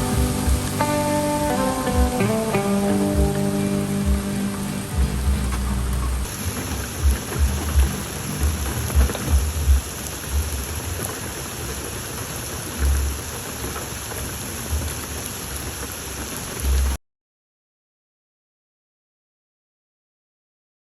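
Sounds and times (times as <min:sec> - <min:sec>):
low thumps: 0:00.0 - 0:10.9
rain falling: 0:00.0 - 0:17.0.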